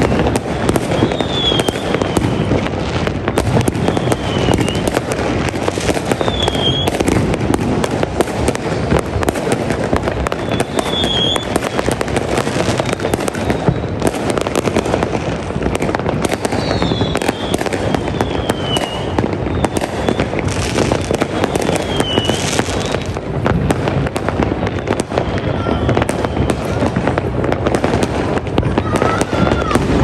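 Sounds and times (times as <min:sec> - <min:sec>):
fireworks crackling and popping: 0:00.0 - 0:30.0
falling whistles: 0:00.9 - 0:02.6, 0:03.2 - 0:04.9, 0:06.2 - 0:07.0, 0:10.4 - 0:11.6, 0:12.8 - 0:14.0, 0:16.5 - 0:20.3, 0:21.8 - 0:23.2.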